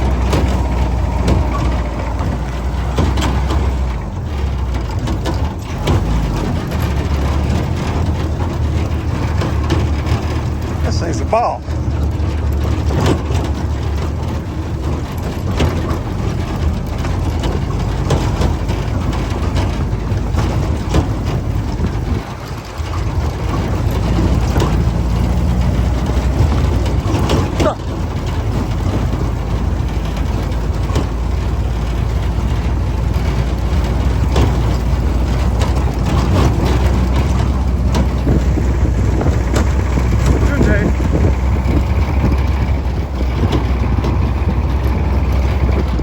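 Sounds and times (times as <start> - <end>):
jeep engine running: 0.0 - 46.0
vehicle rattles and knocks: 0.0 - 46.0.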